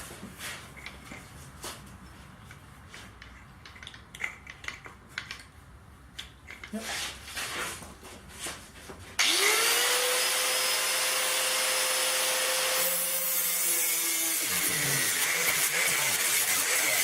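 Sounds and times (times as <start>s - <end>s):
angle grinder cutting sheet metal: 9.2s - 17.0s.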